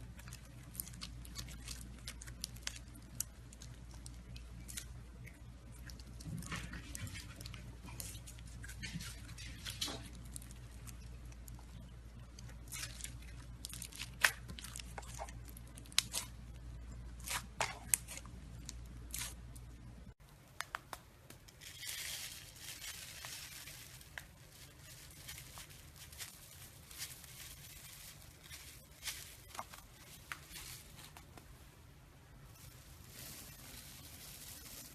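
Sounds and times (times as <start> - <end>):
slime crackling and popping: 0.0 - 8.8, 9.4 - 16.5, 20.5 - 31.5.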